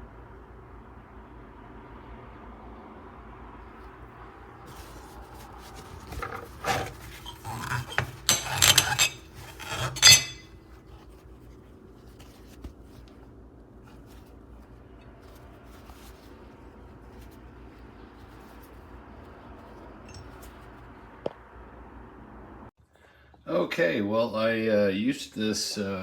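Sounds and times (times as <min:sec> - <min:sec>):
kitchen items clattering: 0:04.7 - 0:10.6.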